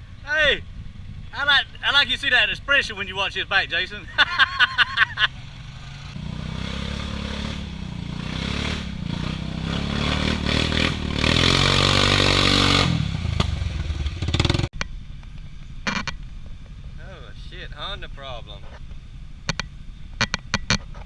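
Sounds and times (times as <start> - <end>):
vehicle engine revving: 4.7 - 14.7.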